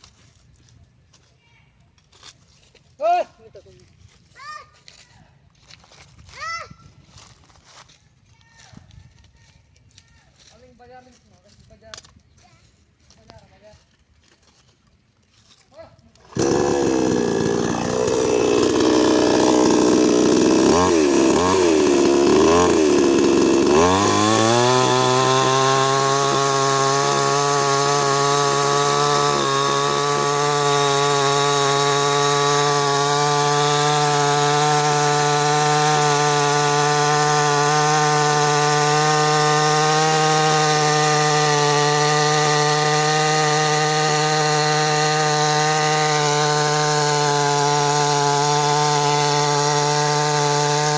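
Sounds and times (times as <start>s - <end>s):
chainsaw running and revving: 16.0s - 50.9s.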